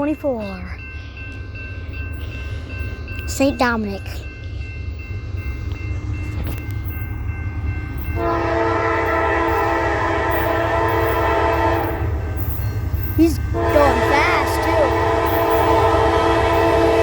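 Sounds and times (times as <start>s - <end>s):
locomotive air horn blast: 8.2s - 12.0s, 13.6s - 17.0s.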